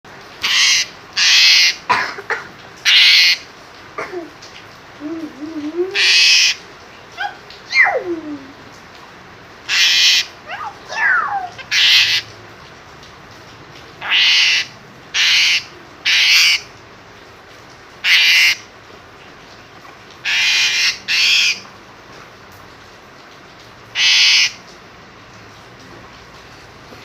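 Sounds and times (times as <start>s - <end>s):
starling harsh calls: 0.4s - 1.8s, 2.9s - 3.5s, 6.0s - 6.6s, 9.7s - 12.3s, 14.0s - 16.7s, 18.0s - 18.7s, 20.2s - 21.6s, 24.0s - 24.6s.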